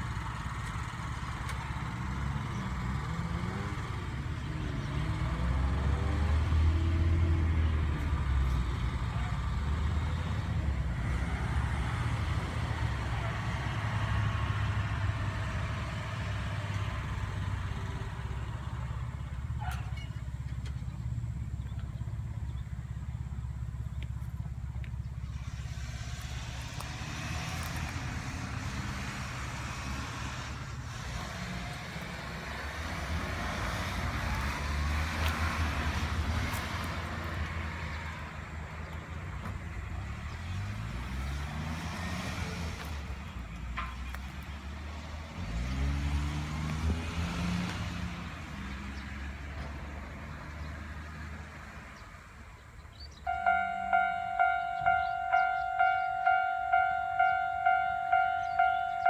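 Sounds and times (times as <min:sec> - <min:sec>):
vehicle engines accelerating: 0:00.0 - 0:59.0
level crossing warning bell: 0:53.3 - 0:59.0.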